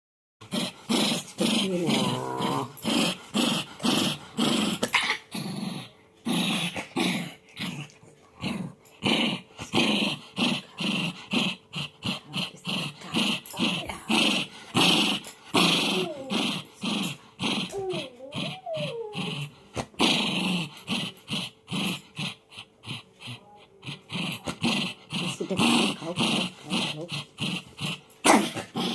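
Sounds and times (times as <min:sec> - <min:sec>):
dog growling: 0:00.4 - 0:28.9
dog whining: 0:17.6 - 0:19.5.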